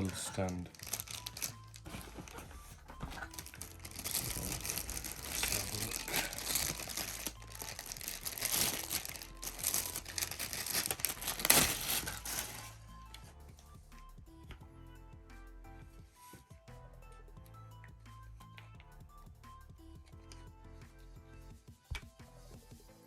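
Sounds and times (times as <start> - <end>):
packaging crinkling and rustling: 0.0 - 12.8.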